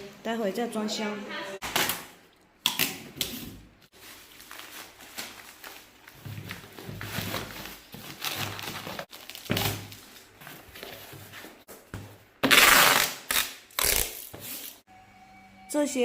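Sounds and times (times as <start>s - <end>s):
plastic bags crinkling: 3.9s - 10.4s.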